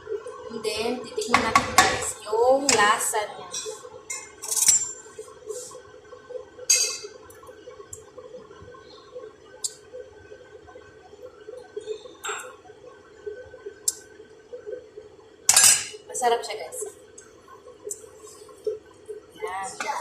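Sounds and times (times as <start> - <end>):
pot bubbling: 0.0 - 20.0
spoon clinking against pot: 6.7 - 7.1.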